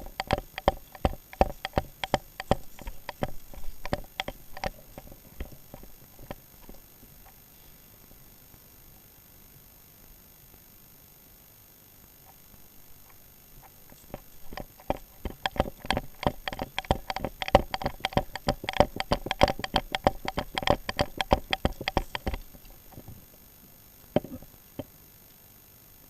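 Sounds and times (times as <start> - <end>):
sharp clicks and snaps: 0.0 - 6.8, 13.9 - 23.2.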